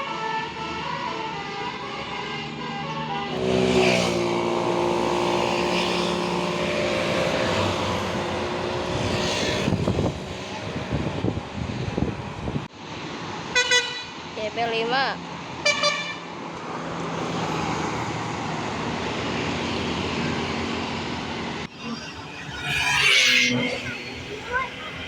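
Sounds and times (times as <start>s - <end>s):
bus musical horn playing tune: 0.0s - 3.5s, 13.6s - 14.1s, 15.6s - 16.3s
road noise: 0.0s - 25.0s
bus engine rumble: 6.2s - 13.6s.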